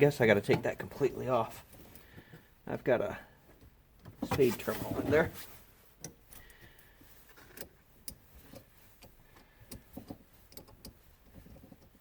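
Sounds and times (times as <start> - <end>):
small clicks and light taps: 6.0 - 12.0.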